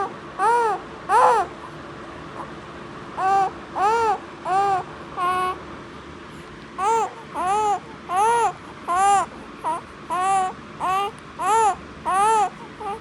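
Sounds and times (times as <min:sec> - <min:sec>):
baby vocalizing: 0:00.0 - 0:01.5, 0:03.2 - 0:05.6, 0:06.8 - 0:13.0.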